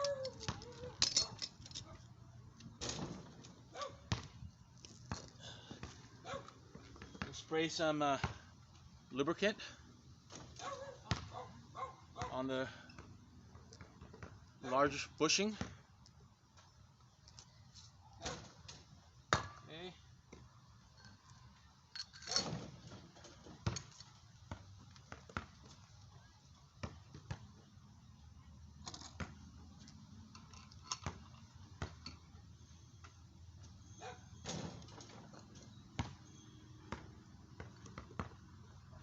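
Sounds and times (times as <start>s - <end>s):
metal tools clicking and knocking: 0.0s - 2.0s, 21.9s - 22.6s, 30.3s - 32.2s.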